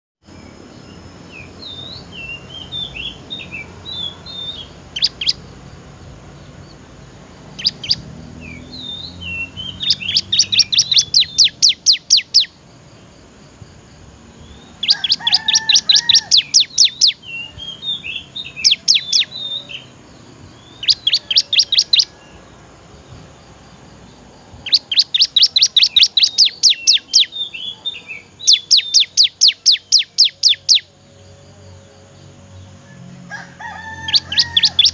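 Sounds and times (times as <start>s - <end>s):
bird twittering warbles: 0.7s - 5.4s, 7.5s - 12.5s, 14.4s - 19.8s, 20.5s - 22.2s, 24.6s - 30.8s, 34.1s - 34.9s
bird fast sharp trills: 1.3s - 5.5s, 7.5s - 12.6s, 14.5s - 19.9s, 20.6s - 22.1s, 24.6s - 30.9s, 34.1s - 34.9s.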